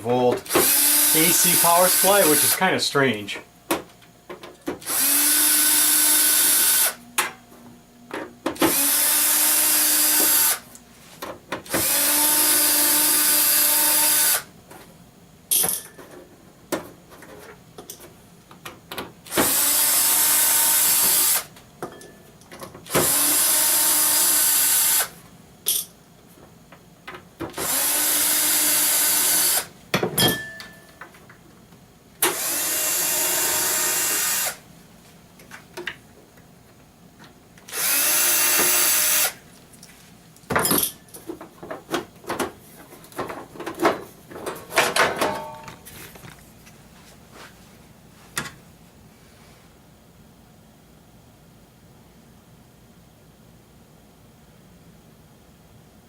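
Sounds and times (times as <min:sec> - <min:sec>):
electric screwdriver whine: 0:00.5 - 0:02.6, 0:04.8 - 0:07.0, 0:08.7 - 0:10.6, 0:11.7 - 0:14.5, 0:19.3 - 0:21.5, 0:22.9 - 0:25.1, 0:27.6 - 0:29.7, 0:32.2 - 0:34.6, 0:37.7 - 0:39.4.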